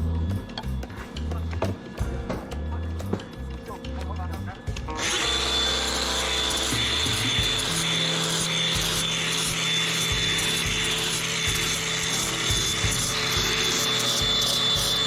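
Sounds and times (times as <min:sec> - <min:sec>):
power tool whining and grinding: 0:04.6 - 0:15.0.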